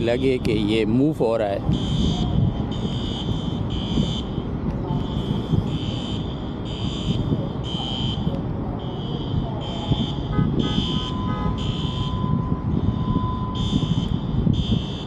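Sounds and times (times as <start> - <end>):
high repeating warning beep: 5.0 - 15.0.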